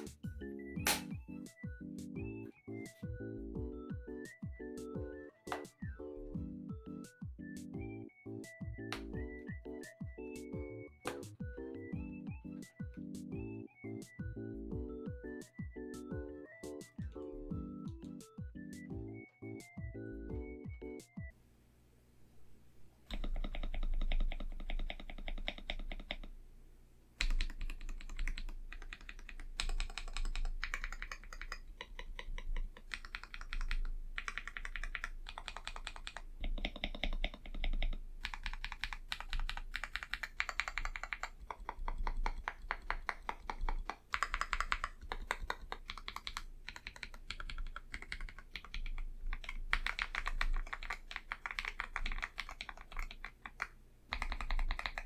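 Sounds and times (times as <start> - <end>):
mechanical keyboard typing: 23.1 - 26.3, 27.2 - 55.0.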